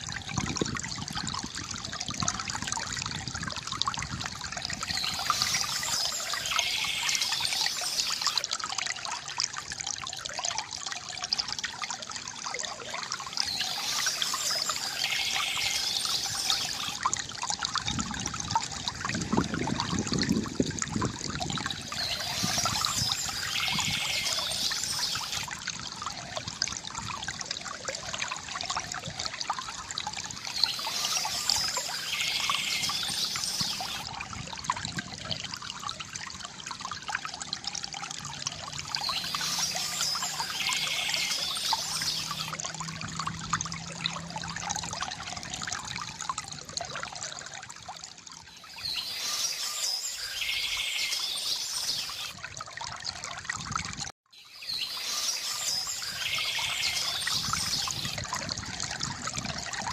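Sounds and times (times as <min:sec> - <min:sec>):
stream water trickling and gurgling: 0:00.0 - 0:59.9
bird singing: 0:04.9 - 0:08.4, 0:13.4 - 0:17.0, 0:21.9 - 0:25.5, 0:30.4 - 0:34.0, 0:39.0 - 0:42.5, 0:48.6 - 0:52.3, 0:54.4 - 0:58.2.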